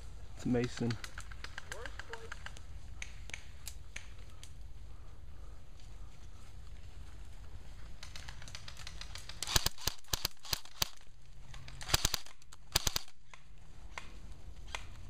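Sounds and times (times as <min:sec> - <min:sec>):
airsoft guns firing: 0:07.9 - 0:13.4.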